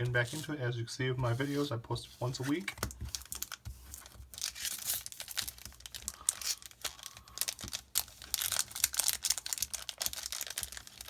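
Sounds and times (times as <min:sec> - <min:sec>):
foil wrapper crinkling and tearing: 0:02.8 - 0:11.0.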